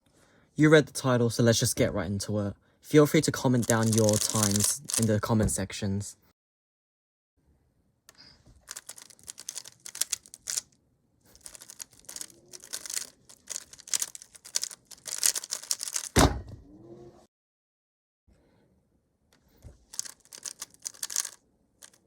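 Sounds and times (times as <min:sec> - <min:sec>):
plastic puzzle cube clicking: 0:03.6 - 0:05.1, 0:08.7 - 0:10.7, 0:11.4 - 0:16.2, 0:19.9 - 0:22.0
loud thump: 0:16.2 - 0:16.6.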